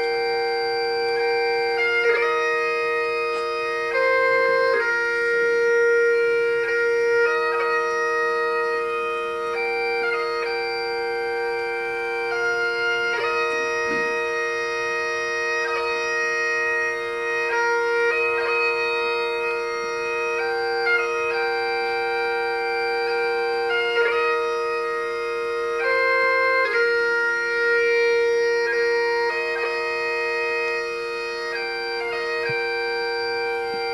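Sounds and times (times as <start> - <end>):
bagpipe music: 0.0 - 33.9.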